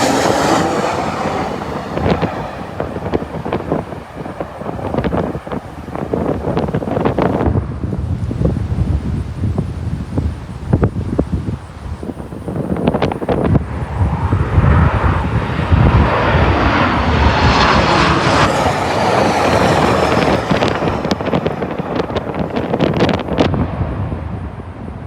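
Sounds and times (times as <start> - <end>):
jet passing low overhead: 0.0 - 25.0
wind buffeting microphone: 0.0 - 25.0.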